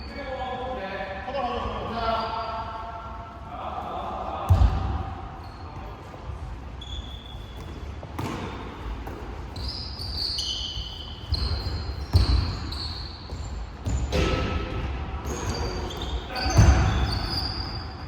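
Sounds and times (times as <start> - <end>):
sneaker squeaks: 5.3 - 18.0
basketball bouncing: 11.3 - 15.5.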